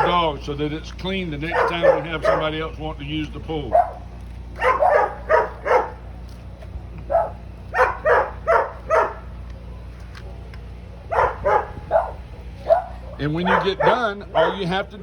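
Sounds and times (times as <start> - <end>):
dog yapping: 0.0 - 0.2, 1.5 - 2.6, 3.7 - 4.0, 4.6 - 6.0, 7.1 - 9.3, 11.1 - 14.8
steady low hum: 0.0 - 15.0.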